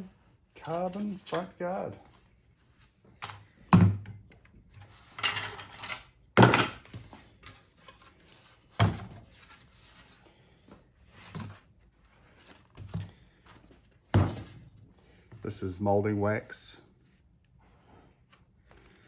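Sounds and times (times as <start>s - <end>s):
objects thunking and knocking: 3.6s - 4.4s, 5.0s - 7.2s, 8.8s - 9.4s, 14.0s - 15.4s.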